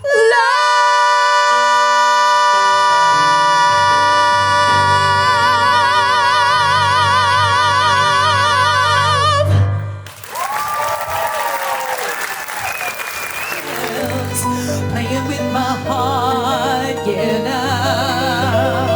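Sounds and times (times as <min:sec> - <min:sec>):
other singing: 0:00.0 - 0:09.6, 0:13.6 - 0:18.9
piano: 0:00.0 - 0:18.9.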